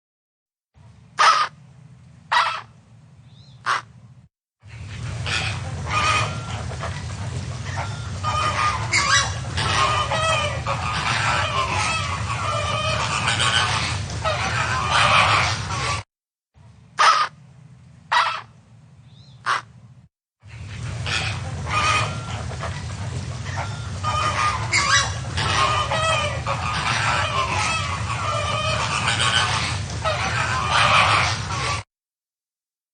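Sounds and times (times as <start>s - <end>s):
flamingos honking: 1.2s - 1.5s, 4.7s - 16.0s, 17.0s - 17.3s, 20.5s - 31.9s.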